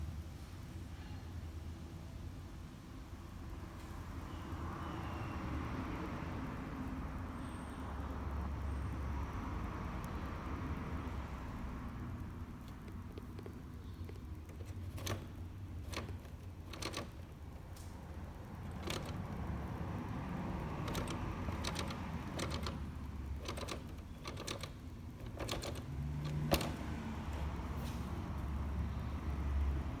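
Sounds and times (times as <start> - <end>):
sharp clicks and taps: 12.2 - 27.7.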